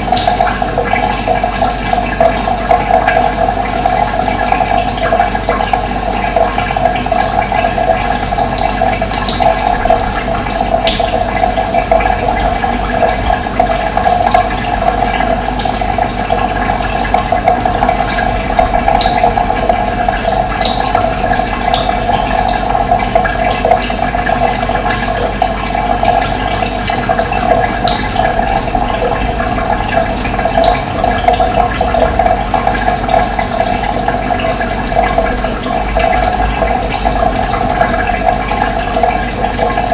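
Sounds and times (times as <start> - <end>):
water rushing: 9.5 - 39.9.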